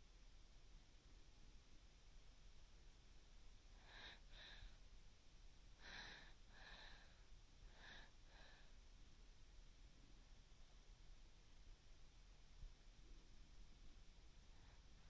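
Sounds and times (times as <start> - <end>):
faint slow breathing: 3.7 - 5.0, 5.7 - 9.1, 14.3 - 15.0.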